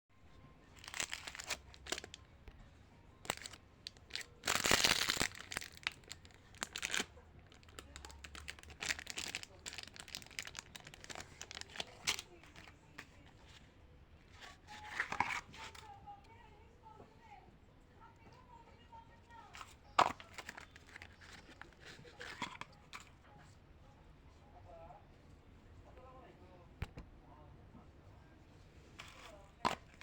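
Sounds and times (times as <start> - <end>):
plastic wrappers crinkling: 0.7 - 2.2, 3.2 - 12.7, 19.6 - 22.7
plastic wrapper tearing: 0.8 - 2.2, 3.2 - 12.7, 19.6 - 22.6.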